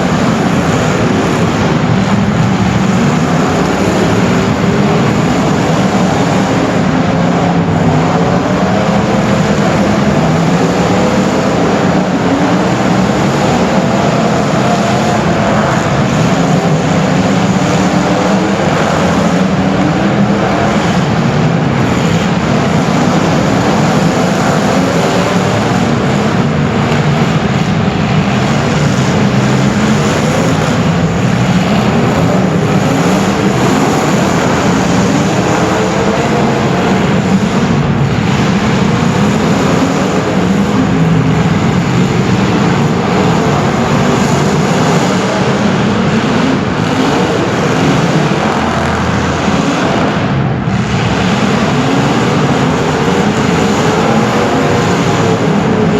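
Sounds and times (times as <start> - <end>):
race car engine revving: 0.0 - 55.9.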